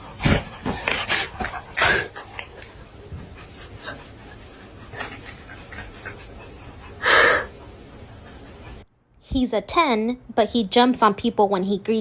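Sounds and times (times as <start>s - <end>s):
dog panting: 0.0s - 8.8s.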